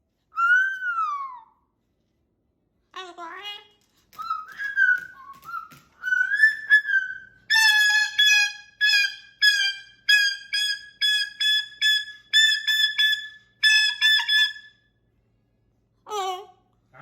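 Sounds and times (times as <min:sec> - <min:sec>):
cockatoo whistling: 0:00.3 - 0:01.6, 0:04.2 - 0:14.6.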